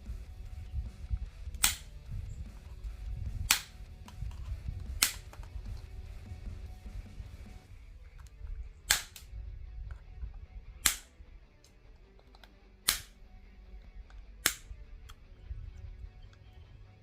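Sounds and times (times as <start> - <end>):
side cutters snipping staples: 1.6 - 1.9, 3.5 - 3.8, 5.0 - 5.5, 8.9 - 9.3, 10.8 - 11.1, 12.8 - 13.2, 14.4 - 14.7.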